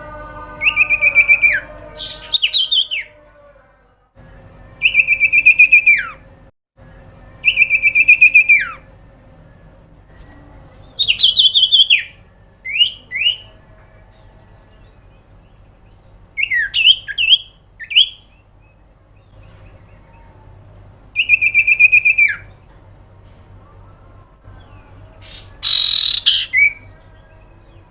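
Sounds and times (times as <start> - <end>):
bird whistling and trilling: 0.7 - 3.1, 4.8 - 6.2, 7.4 - 8.8, 11.0 - 13.4, 16.4 - 18.3, 21.2 - 22.5, 25.2 - 26.9.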